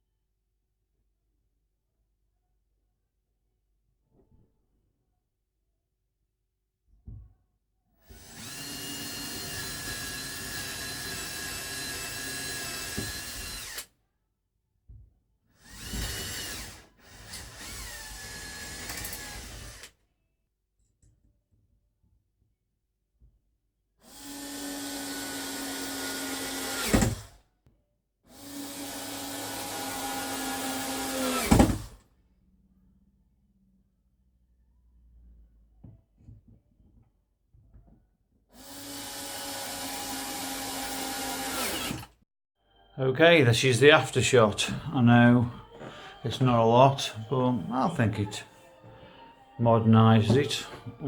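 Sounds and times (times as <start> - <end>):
power drill whining: 8.0 - 13.9, 15.6 - 19.9, 24.1 - 27.4, 28.3 - 32.0, 38.6 - 42.2.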